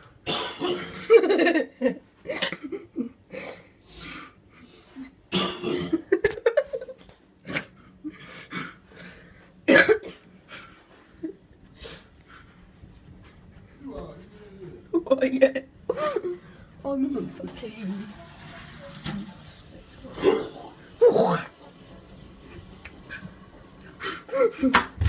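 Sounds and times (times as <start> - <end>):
man coughing: 0.2 - 1.6, 2.3 - 3.6, 5.3 - 6.3, 9.7 - 10.3.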